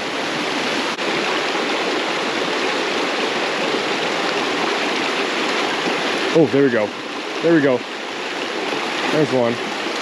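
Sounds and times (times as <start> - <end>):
creek water rushing over rocks: 0.0 - 10.0.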